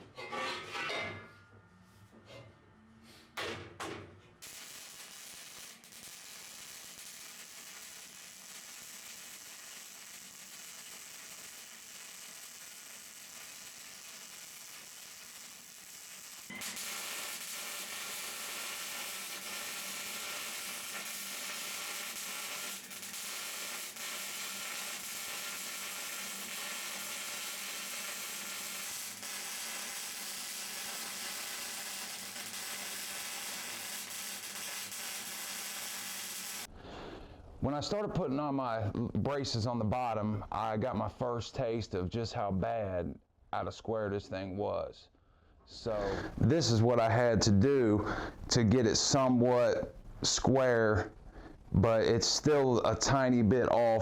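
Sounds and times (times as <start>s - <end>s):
welding sizzle: 4.4s - 36.7s.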